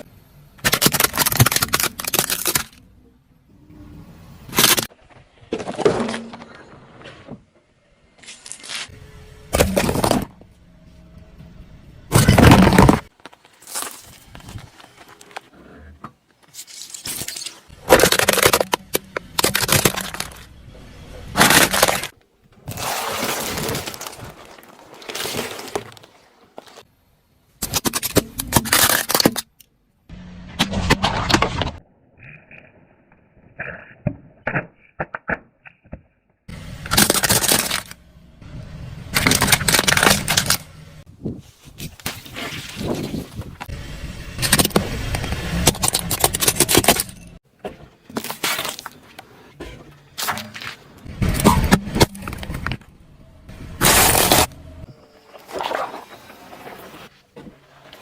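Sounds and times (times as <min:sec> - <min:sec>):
objects crushed under car tyre: 0:09.5 - 0:10.4, 0:12.1 - 0:15.4, 0:16.6 - 0:20.5, 0:21.3 - 0:26.9, 0:36.8 - 0:38.0, 0:39.1 - 0:40.7, 0:44.4 - 0:52.9, 0:53.8 - 0:58.0.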